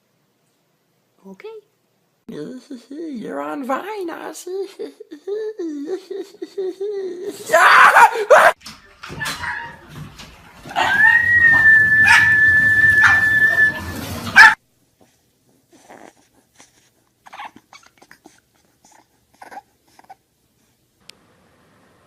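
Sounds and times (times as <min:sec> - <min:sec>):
dog howling whine: 0:10.7 - 0:14.6.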